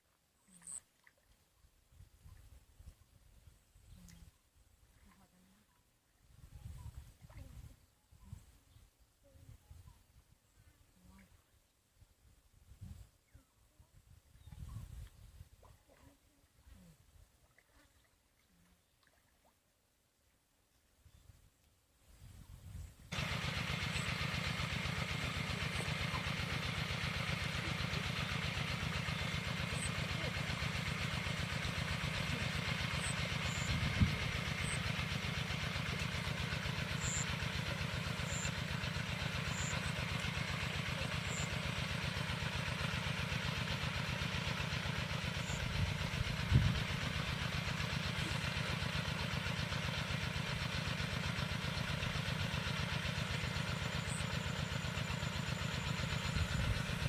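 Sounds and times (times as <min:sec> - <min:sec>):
small engine running: 0:23.1 - 0:57.0.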